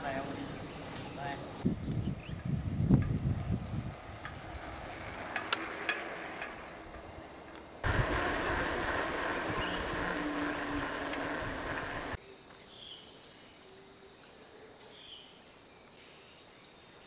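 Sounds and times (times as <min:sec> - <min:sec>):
high insect drone: 0:01.6 - 0:17.0.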